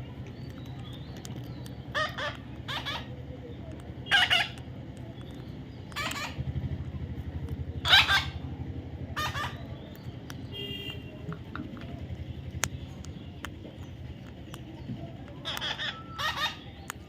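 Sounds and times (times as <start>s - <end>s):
parrot squawking: 1.9s - 3.2s, 4.1s - 4.6s, 5.9s - 6.5s, 7.8s - 8.4s, 9.1s - 9.7s, 15.4s - 16.8s.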